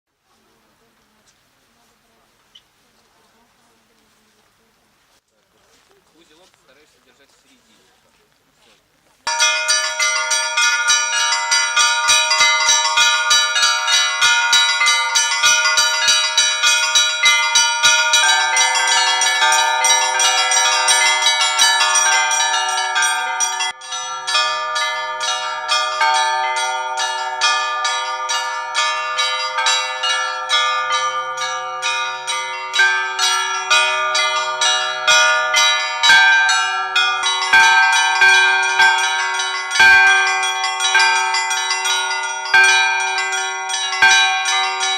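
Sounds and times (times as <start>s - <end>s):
deep bell: 9.3s - 44.9s
large bells ringing: 9.3s - 44.9s
small treble bells striking: 9.3s - 44.9s.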